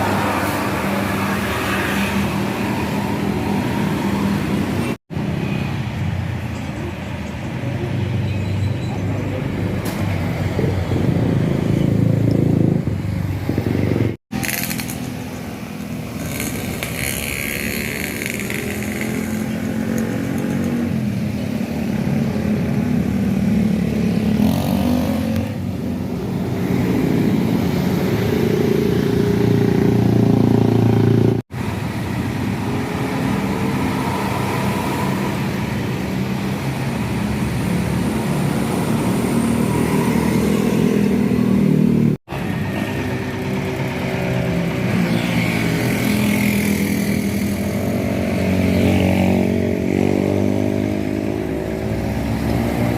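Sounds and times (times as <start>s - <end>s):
vehicle engines accelerating: 0.0s - 52.9s.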